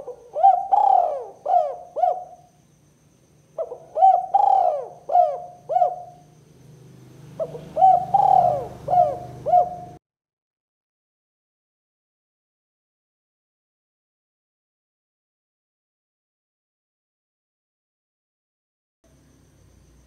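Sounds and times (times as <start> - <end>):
dove cooing: 0.0 - 2.5, 3.6 - 6.4, 7.2 - 10.0.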